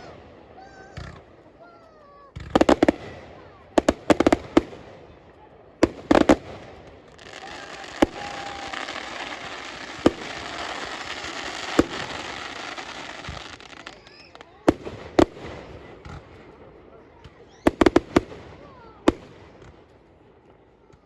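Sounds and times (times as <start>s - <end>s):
firework bangs: 2.3s - 21.0s
firework hiss: 6.1s - 15.6s.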